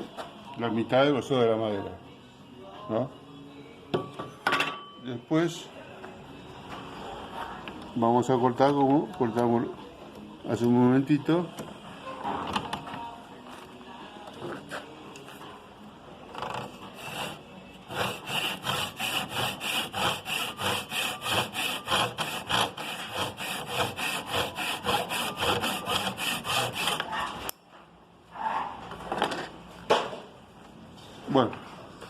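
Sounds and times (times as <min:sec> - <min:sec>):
handsaw cutting wood: 0:16.6 - 0:27.1.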